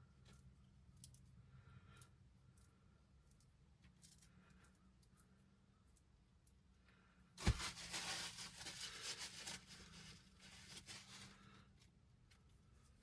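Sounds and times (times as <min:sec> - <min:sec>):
rustling crinkling handling noise: 0:07.4 - 0:13.0.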